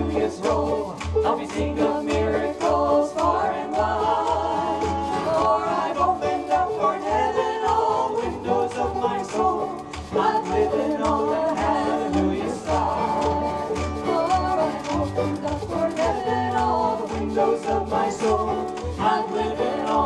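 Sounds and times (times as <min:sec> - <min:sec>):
ukuleles strumming: 0:00.0 - 0:20.0.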